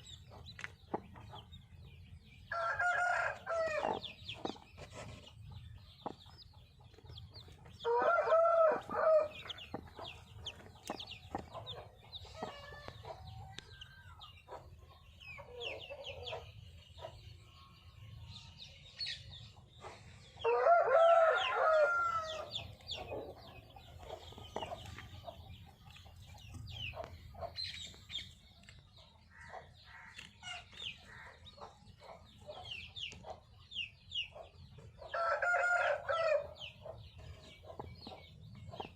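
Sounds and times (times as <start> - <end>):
chicks peeping: 0.0 - 38.9
rooster crowing: 7.9 - 9.4, 20.5 - 22.5, 35.1 - 36.4.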